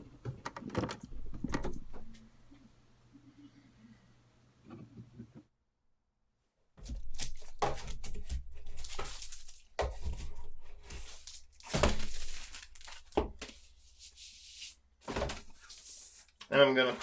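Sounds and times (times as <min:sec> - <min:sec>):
plastic packaging crinkling: 0:07.0 - 0:09.7, 0:10.6 - 0:13.2.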